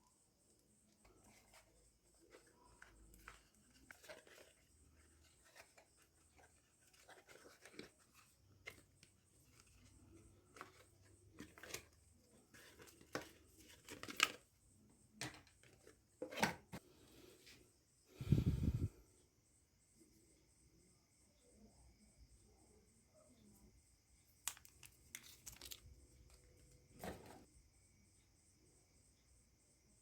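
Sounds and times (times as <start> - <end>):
box and wrapping rustling: 1.0 - 14.4.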